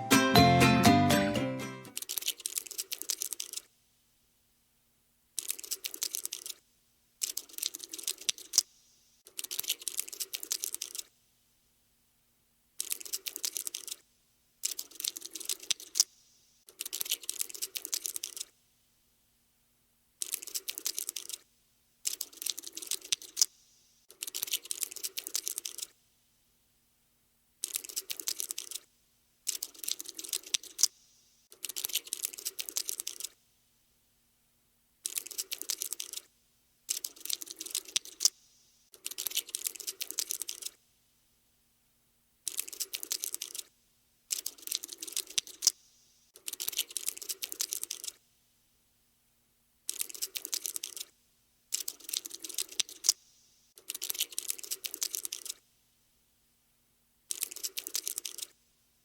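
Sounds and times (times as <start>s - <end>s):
cockroach scuttling: 1.9s - 3.7s, 5.4s - 6.6s, 7.2s - 11.1s, 12.8s - 14.0s, 14.6s - 18.5s, 20.2s - 21.4s, 22.0s - 26.0s, 27.6s - 30.9s, 31.5s - 33.4s, 35.0s - 36.3s, 36.9s - 40.8s, 42.4s - 43.7s, 44.3s - 45.8s, 46.4s - 48.2s, 49.9s - 51.1s, 51.7s - 53.2s, 53.8s - 55.6s, 57.3s - 58.5s.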